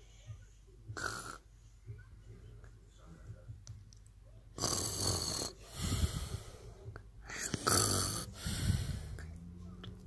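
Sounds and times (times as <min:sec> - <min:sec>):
loud rattling snoring: 0:07.6 - 0:09.1
hissing breath: 0:08.3 - 0:09.2.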